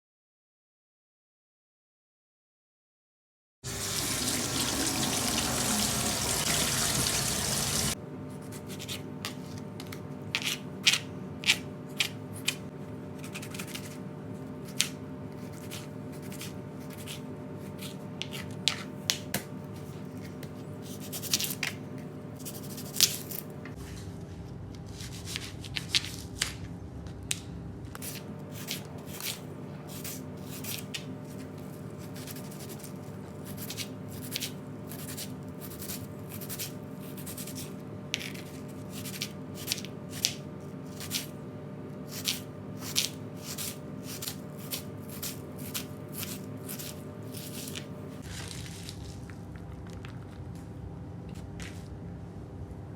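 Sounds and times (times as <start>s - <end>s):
hands handling and cutting food: 24.7s - 26.7s, 27.3s - 41.4s, 42.0s - 50.7s.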